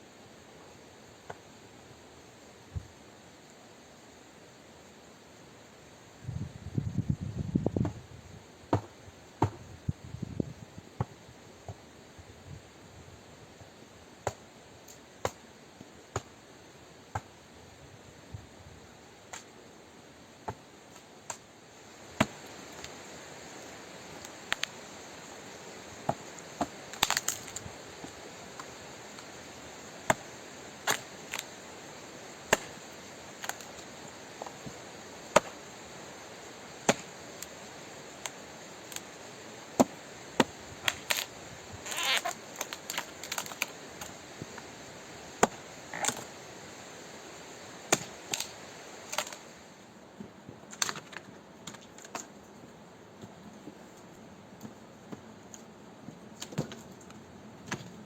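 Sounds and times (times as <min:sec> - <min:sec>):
steady hiss: 0:00.0 - 0:58.0
rustling: 0:40.8 - 0:44.6.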